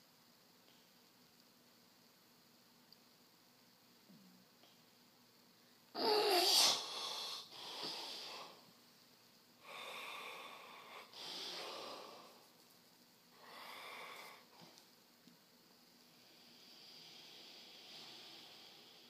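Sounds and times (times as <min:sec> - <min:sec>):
person snoring: 0:06.0 - 0:08.6.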